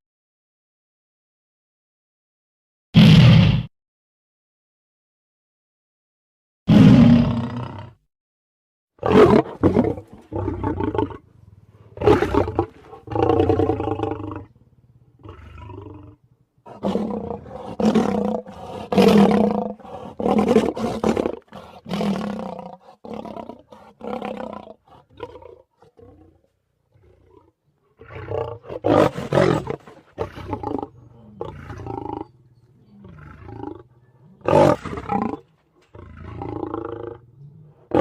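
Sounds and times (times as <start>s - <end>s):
lion roars and growls: 6.7s - 8.0s, 9.0s - 38.0s.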